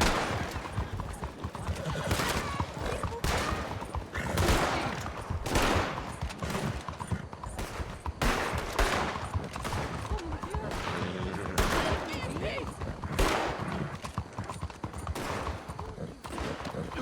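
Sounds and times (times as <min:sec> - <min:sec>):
video game gunfire: 0:00.0 - 0:01.3, 0:02.1 - 0:06.9, 0:07.6 - 0:11.0, 0:11.6 - 0:12.4, 0:13.2 - 0:13.8.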